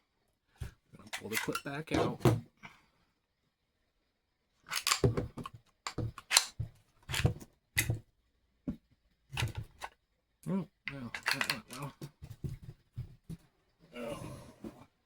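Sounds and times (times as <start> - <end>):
pistol parts clacking and rattling: 1.0 - 1.7, 4.7 - 8.0, 9.4 - 10.0, 10.9 - 12.0.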